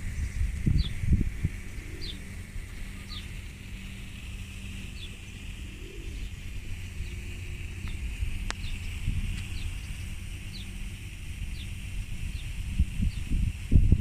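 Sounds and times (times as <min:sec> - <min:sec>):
small bird chirping: 0:00.0 - 0:13.5
low hum: 0:00.0 - 0:14.0
outdoor background noise: 0:00.0 - 0:14.0.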